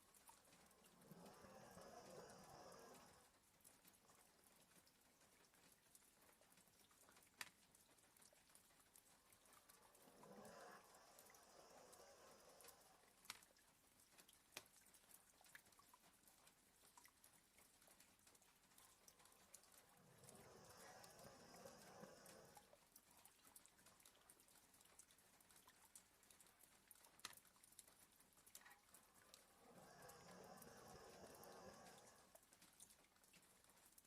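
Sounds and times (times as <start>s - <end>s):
dog snoring: 0.8s - 3.3s, 9.7s - 13.1s, 19.9s - 22.7s, 29.4s - 32.3s.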